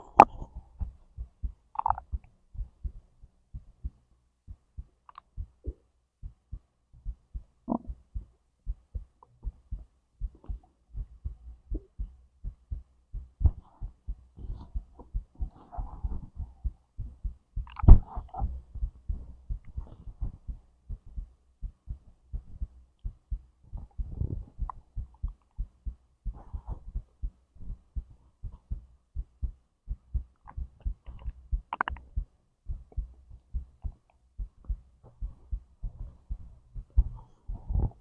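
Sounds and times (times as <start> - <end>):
stomach gurgles: 0.0 - 0.9, 1.7 - 2.3, 7.7 - 8.0, 17.6 - 18.6, 30.4 - 32.2, 37.0 - 38.0
heartbeat thumping: 0.0 - 38.0.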